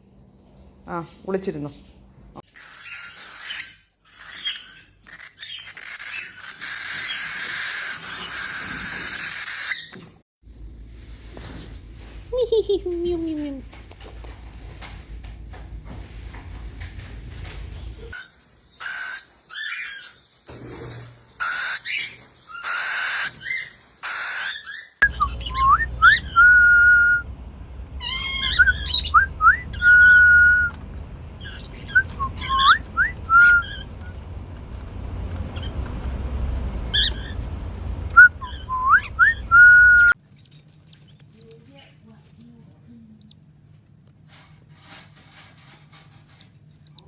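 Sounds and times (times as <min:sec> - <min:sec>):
parrot screeching: 0:02.5 - 0:10.0, 0:18.8 - 0:20.1, 0:21.4 - 0:27.2, 0:28.0 - 0:30.8, 0:31.4 - 0:34.1, 0:36.9 - 0:37.4
parrot whistling a tune: 0:25.0 - 0:27.3, 0:28.0 - 0:30.8, 0:31.4 - 0:33.9, 0:38.1 - 0:40.2.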